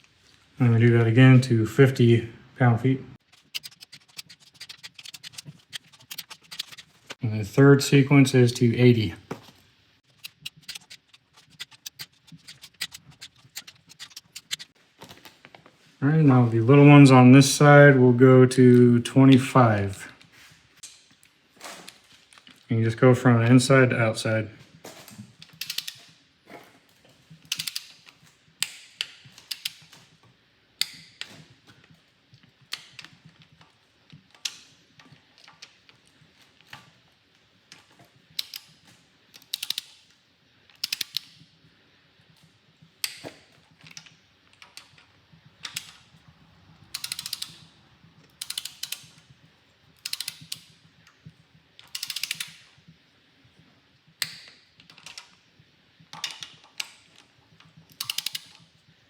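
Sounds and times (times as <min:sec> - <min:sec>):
torque wrench ratchet clicks: 0:27.5 - 0:27.9, 0:47.0 - 0:47.6, 0:48.4 - 0:49.1, 0:50.0 - 0:50.7, 0:51.9 - 0:52.6, 0:58.0 - 0:58.5.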